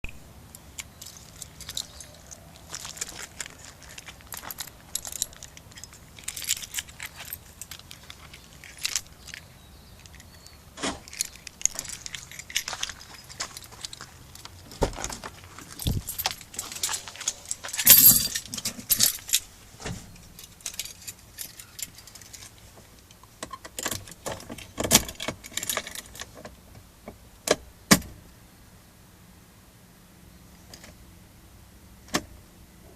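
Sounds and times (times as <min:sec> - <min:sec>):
keys jangling: 0:01.0 - 0:10.4, 0:11.1 - 0:14.1, 0:15.7 - 0:19.4.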